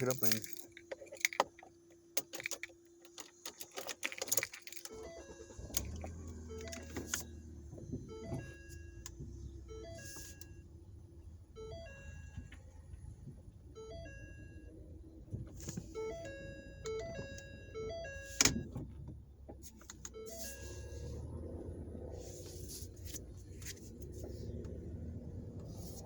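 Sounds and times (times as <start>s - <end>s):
low engine rumble: 5.0s - 26.0s
short electronic beeps: 20.1s - 21.2s.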